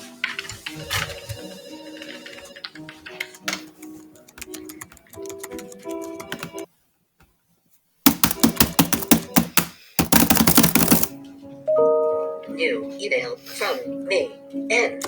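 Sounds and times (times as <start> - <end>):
music: 0.0 - 6.7, 8.1 - 15.0
fast typing on keyboard: 0.2 - 6.7, 8.1 - 11.1.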